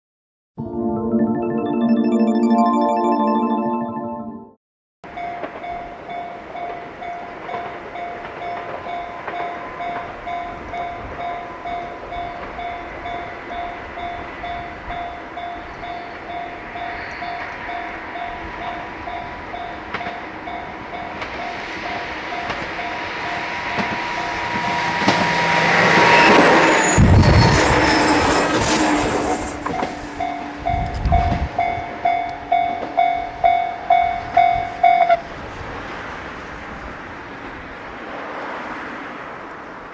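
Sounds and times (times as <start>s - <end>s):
level-crossing bell dinging: 5.1s - 30.9s
electric train running: 20.8s - 30.8s.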